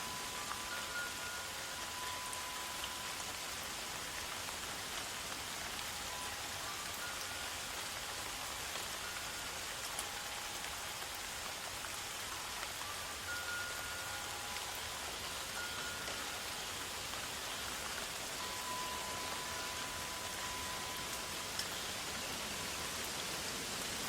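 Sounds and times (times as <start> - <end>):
steady rain falling: 0.0 - 24.0
faint high held tones: 18.4 - 21.4.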